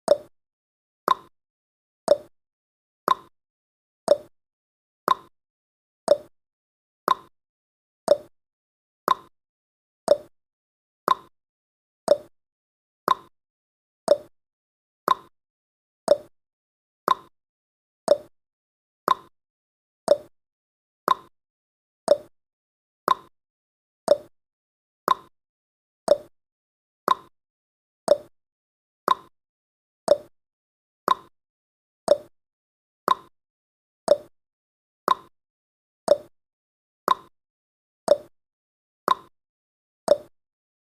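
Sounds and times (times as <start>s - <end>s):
clock ticking: 30.1s - 30.3s, 34.1s - 34.3s, 36.1s - 36.3s, 40.1s - 40.3s.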